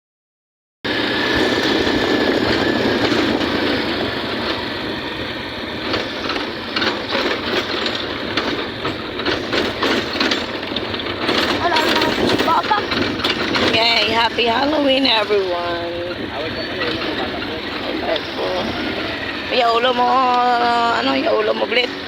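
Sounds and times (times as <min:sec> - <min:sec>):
moving vehicle rumbling: 0:00.9 - 0:22.0
rattling clicks: 0:05.7 - 0:20.5.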